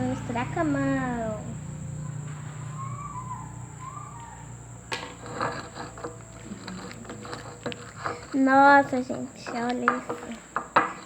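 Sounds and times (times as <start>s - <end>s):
thin high whine: 0.0s - 10.5s
background hum: 0.0s - 11.0s
sticky slime squelches: 6.2s - 10.4s.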